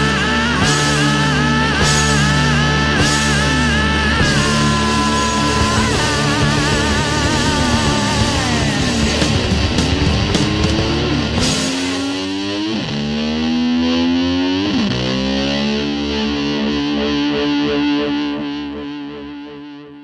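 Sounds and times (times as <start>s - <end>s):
distorted electric guitar: 0.0s - 20.0s
drum hits: 0.6s - 12.3s.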